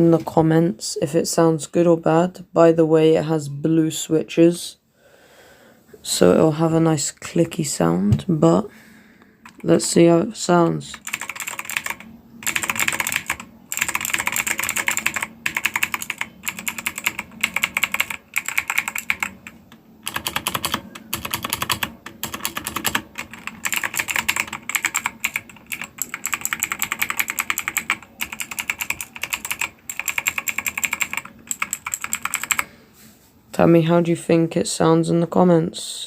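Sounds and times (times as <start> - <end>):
mechanical keyboard typing: 9.4 - 9.9, 10.9 - 32.7.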